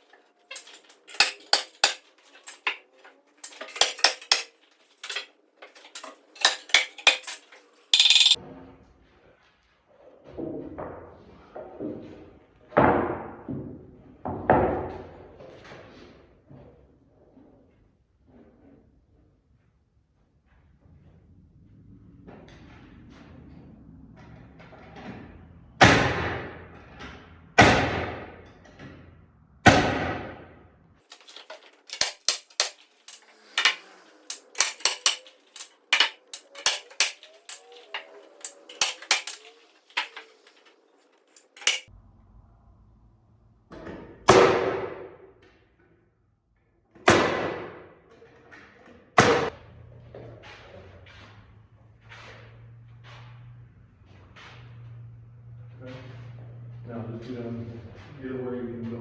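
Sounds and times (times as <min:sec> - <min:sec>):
nails driven into wood: 0:00.5 - 0:02.8, 0:03.4 - 0:05.2, 0:05.8 - 0:07.4, 0:31.1 - 0:40.6, 0:41.3 - 0:41.8.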